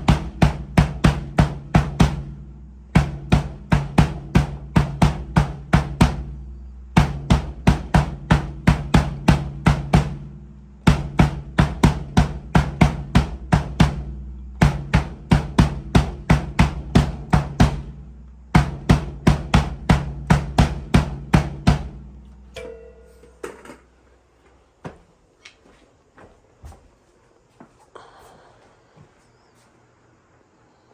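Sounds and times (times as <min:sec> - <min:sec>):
low drum ring: 0:00.0 - 0:24.0.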